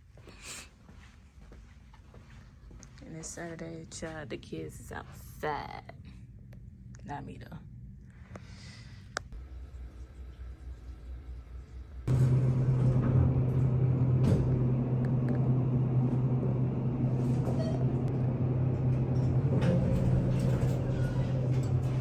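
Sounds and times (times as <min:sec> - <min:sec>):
vehicle engine hum and rumble: 0:12.0 - 0:22.0.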